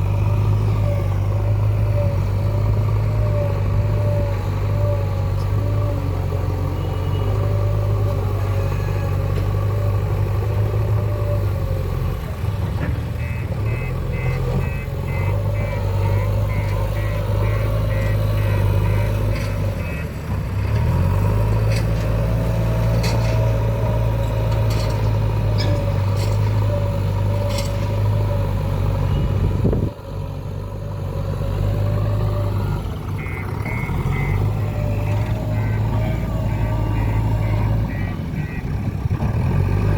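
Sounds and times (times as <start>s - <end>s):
diesel engine running: 0.0s - 39.9s
rapid beeping alarm: 13.2s - 20.1s, 33.2s - 38.8s.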